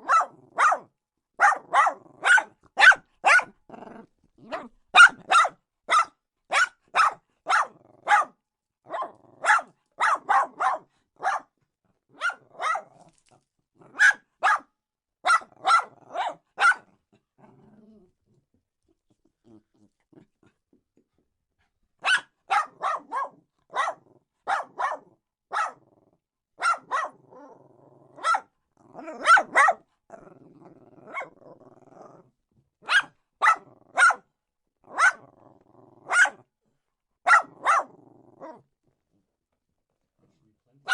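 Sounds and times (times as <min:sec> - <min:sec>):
dog barking aggressively: 0:00.0 - 0:11.5, 0:12.1 - 0:13.0, 0:13.8 - 0:17.0, 0:22.0 - 0:25.9, 0:26.6 - 0:30.3, 0:30.9 - 0:31.4, 0:32.8 - 0:34.2, 0:34.9 - 0:35.4, 0:36.0 - 0:36.4, 0:37.2 - 0:38.6
dog growling: 0:03.5 - 0:05.3, 0:07.7 - 0:08.2, 0:12.9 - 0:14.0, 0:17.1 - 0:20.6, 0:25.8 - 0:26.2, 0:27.1 - 0:32.4, 0:33.5 - 0:34.0, 0:34.9 - 0:36.3, 0:37.4 - 0:38.7.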